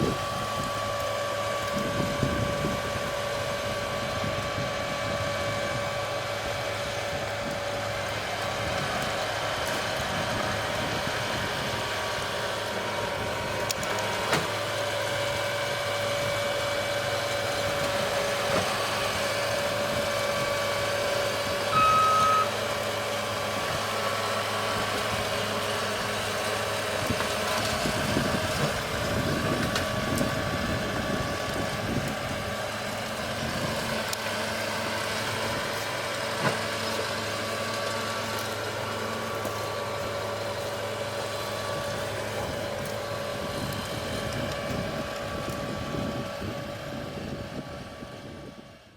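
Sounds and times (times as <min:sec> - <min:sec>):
tractor engine running: 0:00.0 - 0:48.9
short high beep: 0:21.7 - 0:22.6.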